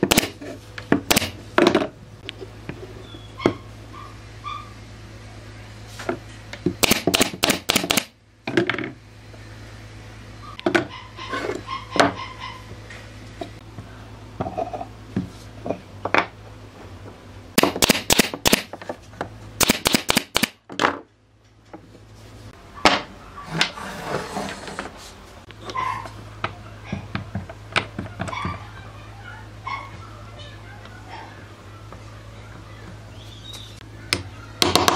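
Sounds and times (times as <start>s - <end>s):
steady low hum: 0.0s - 34.9s.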